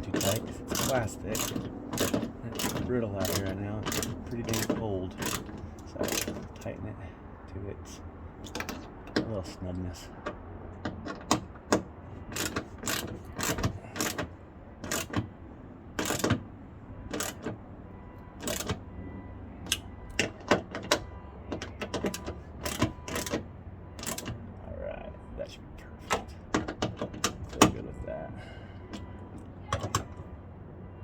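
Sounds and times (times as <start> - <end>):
socket ratchet clicking: 0.0 - 6.6, 10.2 - 15.3, 16.0 - 16.5, 17.1 - 17.6, 18.4 - 18.8, 19.6 - 21.0, 21.6 - 24.4
metallic knocks of tool handling: 8.4 - 9.4.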